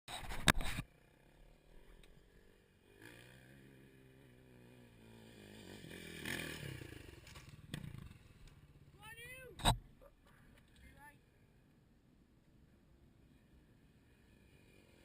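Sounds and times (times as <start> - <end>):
dirt bike engine running: 0.7 - 10.0.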